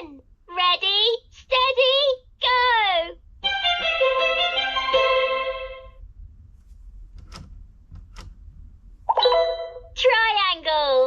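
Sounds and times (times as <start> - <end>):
toy playing violin music: 3.4 - 5.8.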